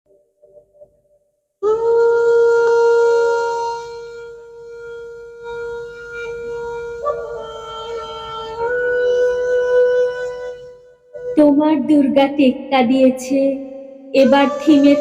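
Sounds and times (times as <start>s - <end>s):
conch shell blown: 1.6s - 11.6s, 13.8s - 15.0s.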